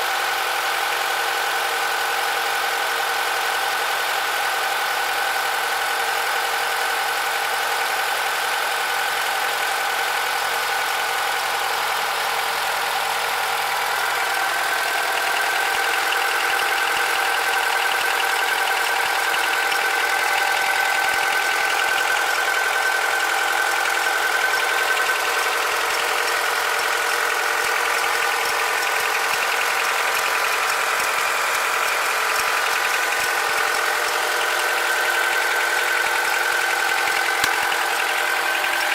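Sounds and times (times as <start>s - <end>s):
car engine running: 0.0s - 38.9s
extraneous engine noise: 11.8s - 38.9s.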